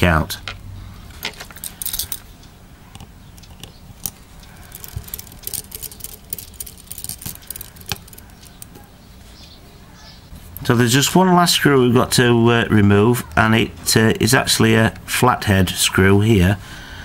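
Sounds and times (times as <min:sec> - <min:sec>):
metal tool clicking and scraping: 0:02.9 - 0:08.8.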